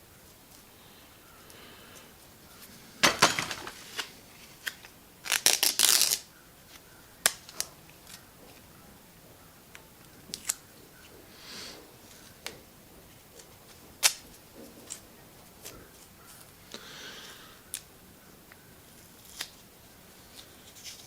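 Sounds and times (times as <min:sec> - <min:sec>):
tape ripping off roll: 0:03.0 - 0:06.3.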